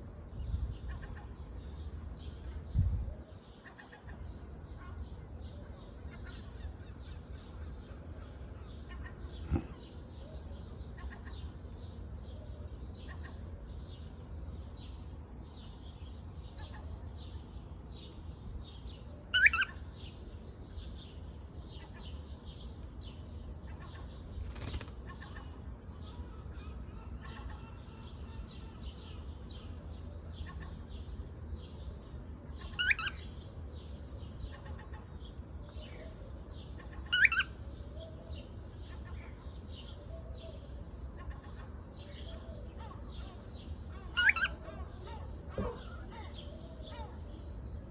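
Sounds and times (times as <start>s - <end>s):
parrot chattering chirps: 37.1s - 37.5s, 44.1s - 44.6s
loud parrot calls: 44.2s - 44.5s.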